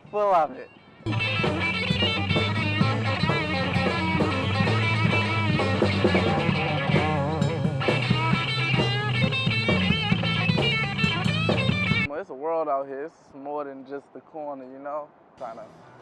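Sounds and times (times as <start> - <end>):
electric guitar blues-rock lead: 1.1 - 12.1
low bass note: 1.1 - 12.1.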